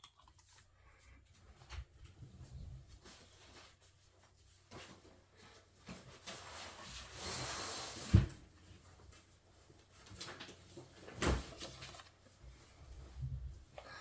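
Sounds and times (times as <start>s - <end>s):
rubbing or sliding on desk: 6.5s - 8.3s.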